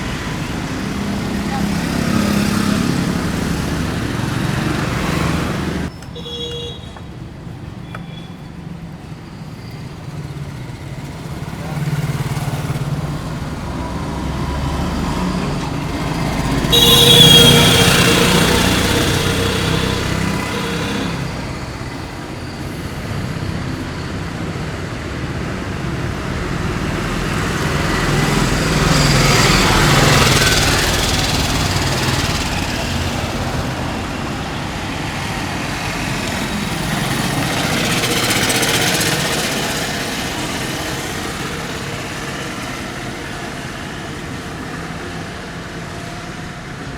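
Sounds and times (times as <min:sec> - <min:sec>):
road traffic passing: 0:00.0 - 0:46.9
vehicle horn: 0:03.8 - 0:07.0, 0:16.4 - 0:21.5.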